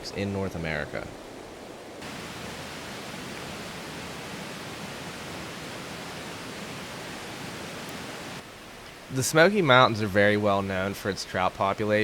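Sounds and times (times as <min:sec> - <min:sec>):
stream water rushing: 0:01.1 - 0:09.8.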